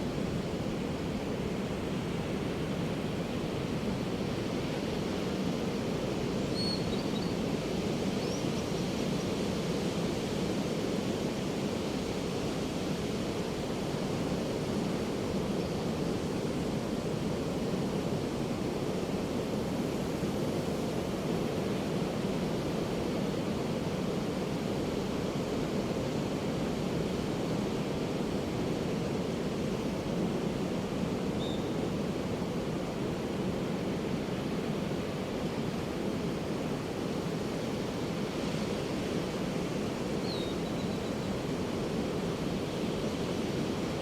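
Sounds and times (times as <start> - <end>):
ocean waves breaking on beach: 8.8 - 40.2, 41.2 - 44.0.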